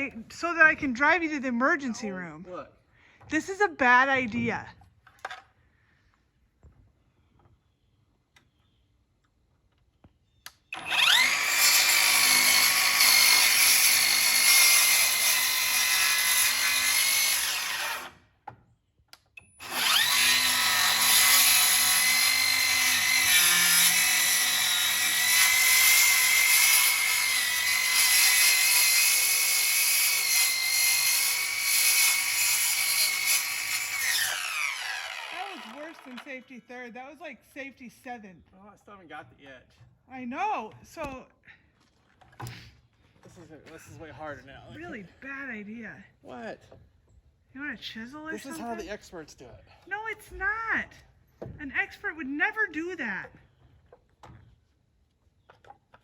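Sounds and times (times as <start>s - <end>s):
circular saw whining: 10.7s - 18.1s, 19.6s - 36.5s.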